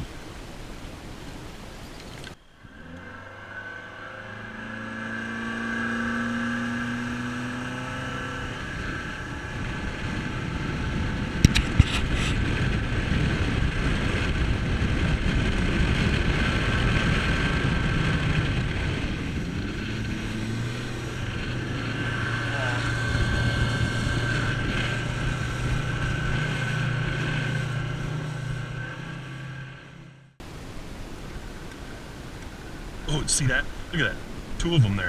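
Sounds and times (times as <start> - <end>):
rushing water and wind: 0.0 - 35.0
outboard motor running: 14.6 - 29.4.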